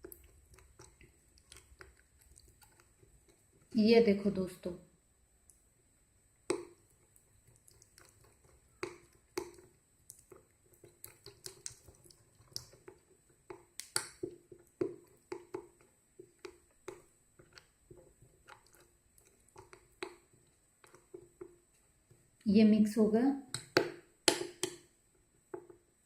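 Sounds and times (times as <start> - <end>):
spoon stirring in container: 0.0 - 4.2, 6.5 - 22.4.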